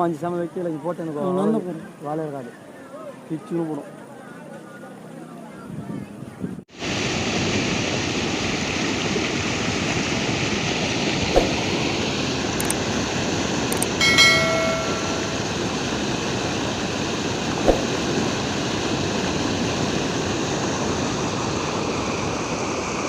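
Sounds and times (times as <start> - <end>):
short pitched tone: 14.0 - 15.6.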